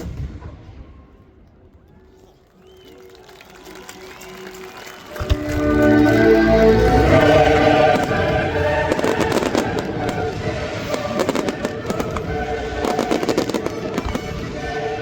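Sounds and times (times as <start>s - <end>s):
music: 0.6s - 15.0s
fireworks crackling and banging: 4.7s - 15.0s.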